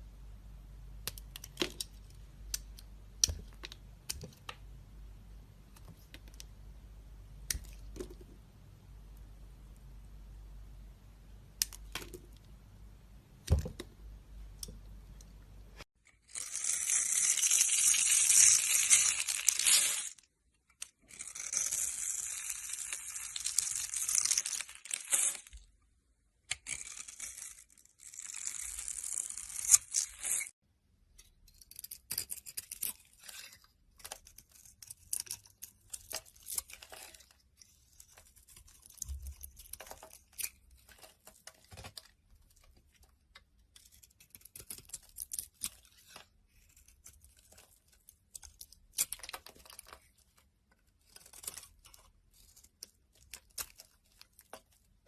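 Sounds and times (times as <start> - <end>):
blade scraping through soap: 31.5 - 41.8.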